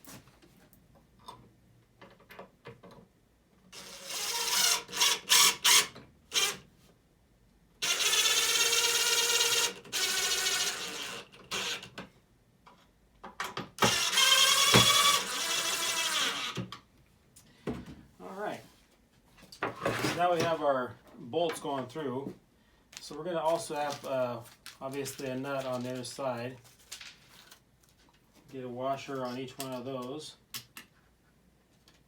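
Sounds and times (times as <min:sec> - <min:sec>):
cordless drill driving bolts: 0:03.8 - 0:06.6, 0:07.8 - 0:12.0, 0:13.8 - 0:16.8.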